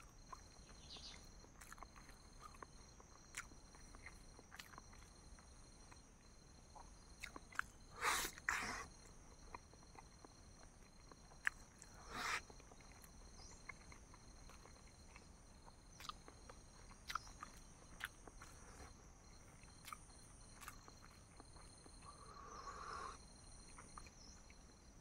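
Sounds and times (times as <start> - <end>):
mouth clicks while eating: 6.8 - 18.9, 19.6 - 24.6.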